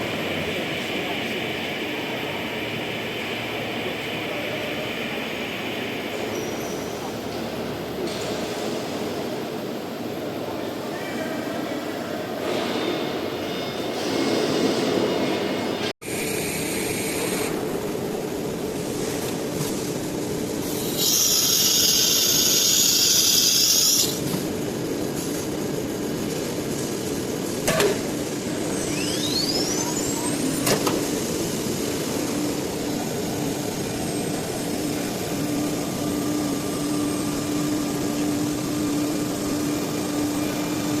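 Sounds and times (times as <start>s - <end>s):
machine running: 14.0s - 41.0s
loud air hiss: 20.6s - 24.2s
rising whine: 26.3s - 41.0s.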